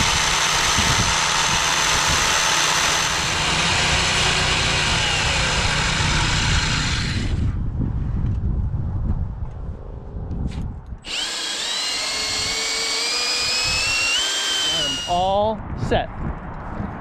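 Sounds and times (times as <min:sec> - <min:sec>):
motor running with low rumble: 0:00.0 - 0:07.9, 0:11.0 - 0:15.1.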